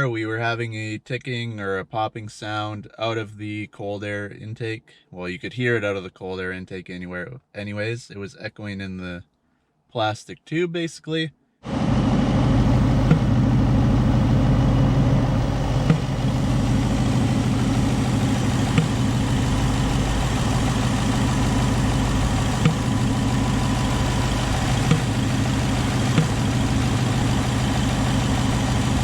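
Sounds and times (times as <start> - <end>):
car engine idling: 11.7 - 29.0
engine intake pops: 12.9 - 13.7, 15.6 - 29.0.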